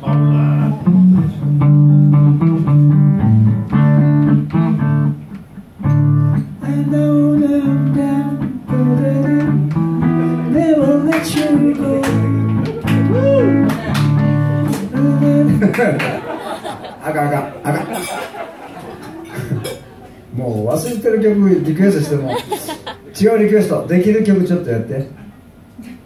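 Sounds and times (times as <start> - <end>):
guitar strumming chords: 0.0 - 16.3
person singing: 6.6 - 15.7.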